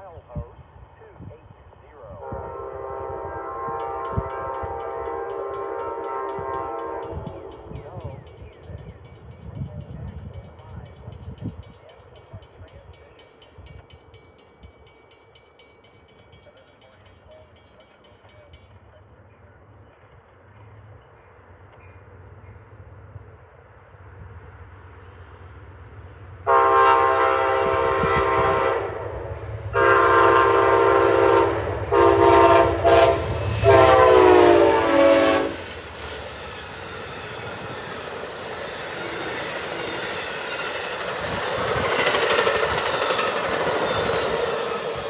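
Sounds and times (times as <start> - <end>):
locomotive horn blasts: 2.1 - 7.8, 26.5 - 29.1, 29.7 - 35.8
train wheels clattering on rails: 3.7 - 19.0, 29.6 - 45.0.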